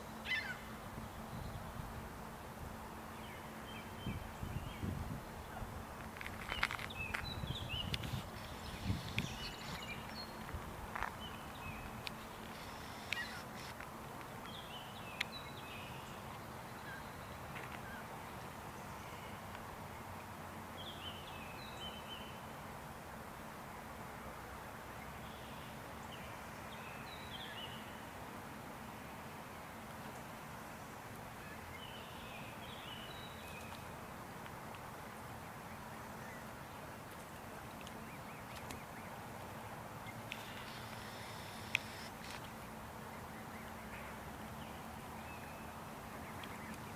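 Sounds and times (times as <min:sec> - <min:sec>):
outdoor background hum: 0:00.0 - 0:46.9
chickadees calling: 0:00.2 - 0:00.7, 0:11.0 - 0:13.8
sharp clicks: 0:40.3 - 0:42.5.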